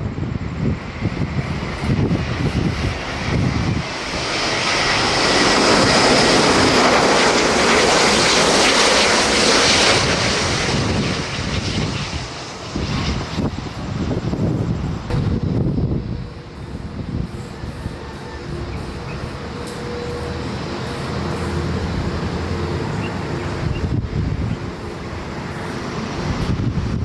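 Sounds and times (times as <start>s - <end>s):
high engine whine: 0.0s - 27.0s
jet airliner passing: 0.0s - 27.0s
wind rumble on microphone: 0.0s - 27.0s.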